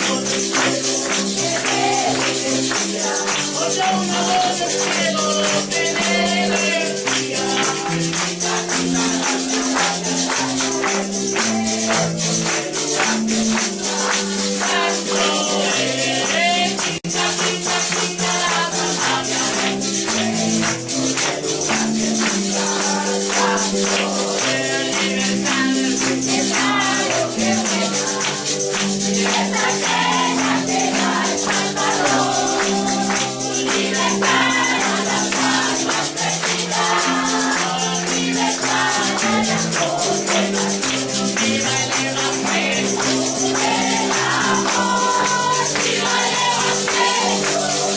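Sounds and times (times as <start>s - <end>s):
tambourine and shakers rattling: 0.0s - 47.9s
voices singing worship music: 0.0s - 47.9s.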